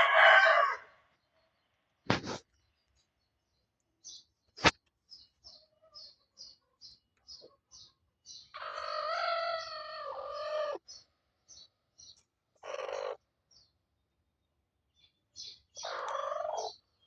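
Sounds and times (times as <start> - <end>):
rooster crowing: 0.0 - 1.0.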